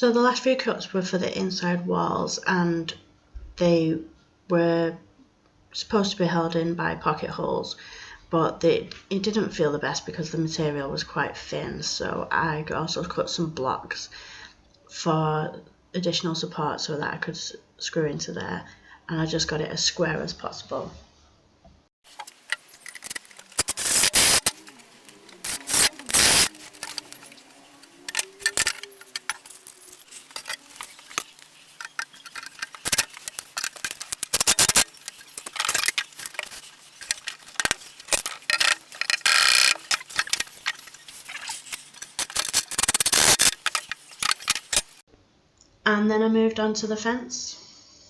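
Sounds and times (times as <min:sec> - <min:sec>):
wooden pieces knocking and clattering: 0:22.1 - 0:45.0.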